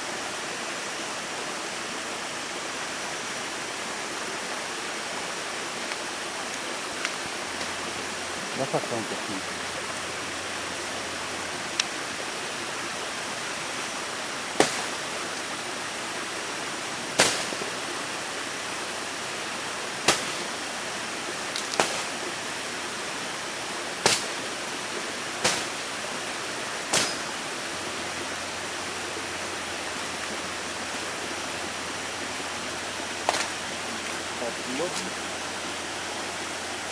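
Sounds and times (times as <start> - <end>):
rushing water: 0.0 - 36.9
sharp short knocks: 26.9 - 27.3.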